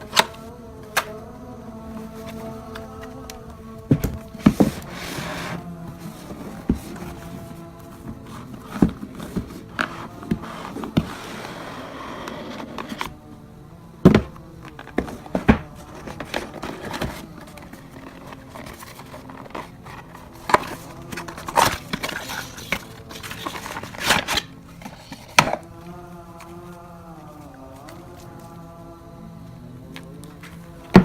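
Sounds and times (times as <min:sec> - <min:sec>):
faint background music: 0:00.0 - 0:31.0
packaging knocks and clicks: 0:01.9 - 0:11.2, 0:14.1 - 0:28.6.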